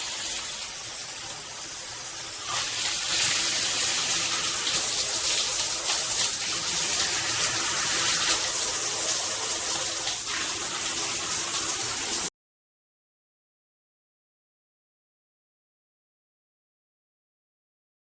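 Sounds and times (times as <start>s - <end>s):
shower head spraying water: 0.0s - 12.3s.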